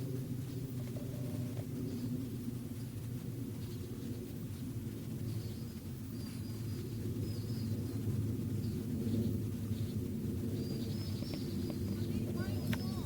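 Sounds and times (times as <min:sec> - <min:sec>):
low woodland rumble: 0:00.0 - 0:13.0
bird chirps: 0:10.6 - 0:13.0.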